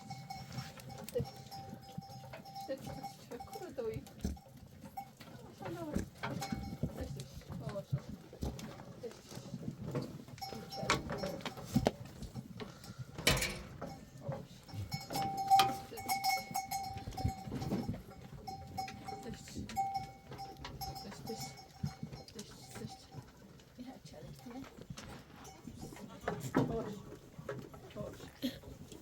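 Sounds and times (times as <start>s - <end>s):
livestock bells ringing: 0.0s - 7.3s, 10.3s - 24.6s, 25.4s - 26.5s.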